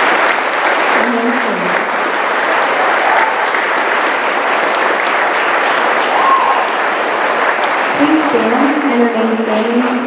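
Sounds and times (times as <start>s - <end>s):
crowd applauding: 0.0s - 10.0s
faint shouts: 6.1s - 6.7s.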